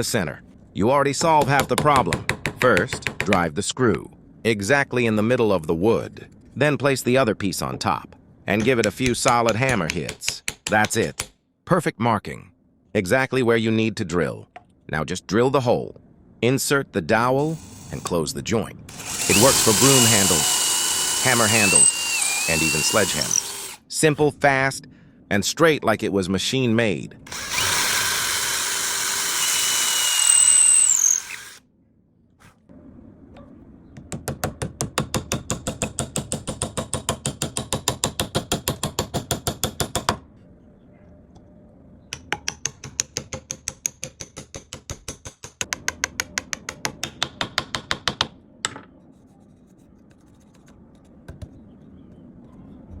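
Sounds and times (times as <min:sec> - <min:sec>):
power drill running: 0:17.4 - 0:18.1, 0:18.9 - 0:23.8, 0:27.3 - 0:31.6.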